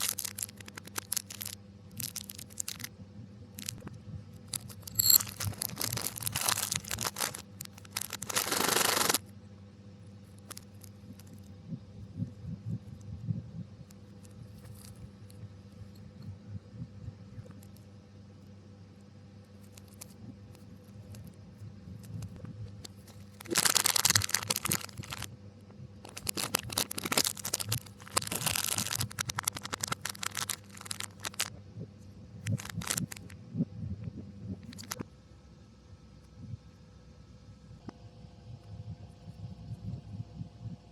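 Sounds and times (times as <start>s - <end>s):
reversed packaging crinkling: 0.0s - 2.9s, 3.6s - 3.8s, 4.5s - 9.2s, 22.0s - 25.3s, 26.0s - 31.5s, 32.5s - 33.4s, 34.6s - 35.0s.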